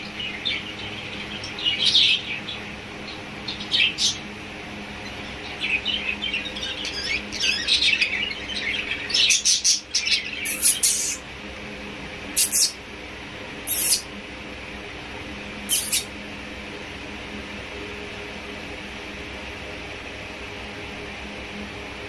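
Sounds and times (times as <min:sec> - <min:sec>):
lovebirds chirping: 0:00.0 - 0:04.3, 0:04.9 - 0:11.2, 0:12.4 - 0:12.8, 0:13.7 - 0:14.1, 0:15.7 - 0:16.1.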